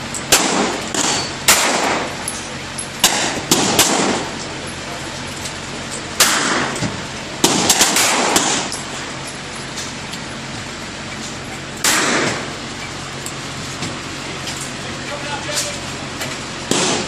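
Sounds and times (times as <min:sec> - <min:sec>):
gunshots with echo: 0:00.3 - 0:02.1, 0:03.0 - 0:04.3, 0:07.4 - 0:08.7, 0:11.8 - 0:12.5, 0:16.7 - 0:17.0.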